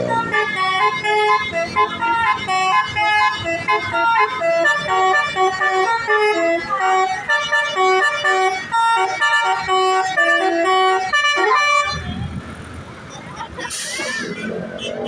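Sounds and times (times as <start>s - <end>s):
multi-tone air horn tune: 0.0s - 12.0s.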